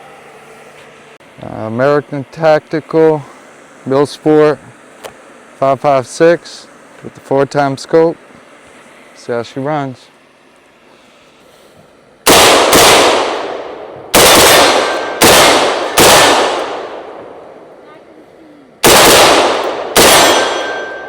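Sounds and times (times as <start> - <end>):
rifle shots with echo: 12.3 - 17.6, 18.8 - 21.0.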